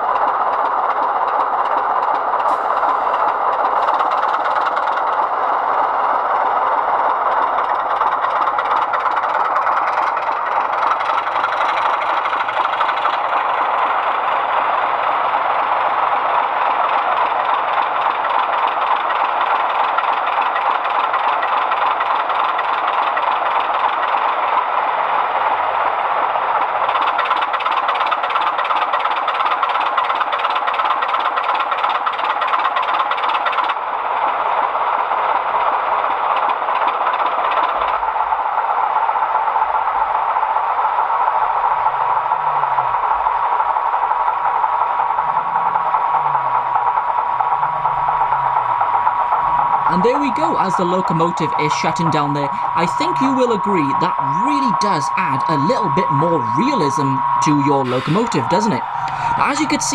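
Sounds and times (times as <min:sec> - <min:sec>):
diesel engine sound from small speaker: 0:00.0 - 0:32.3, 0:39.4 - 0:59.9
hiss: 0:02.5 - 0:04.1.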